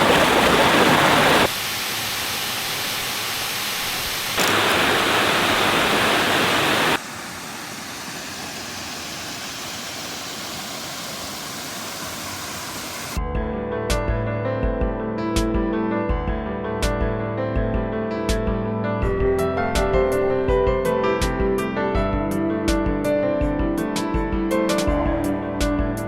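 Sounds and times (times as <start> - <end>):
rushing water of waterfalls: 0.0 - 13.2
music: 13.2 - 26.0.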